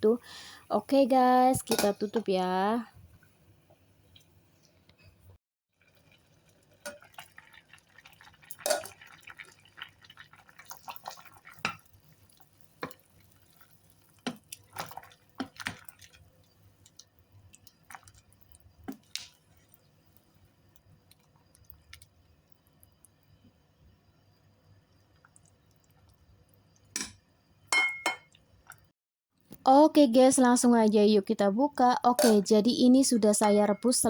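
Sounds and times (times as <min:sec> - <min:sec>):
soup simmering with soft pops: 0:03.1 - 0:28.9.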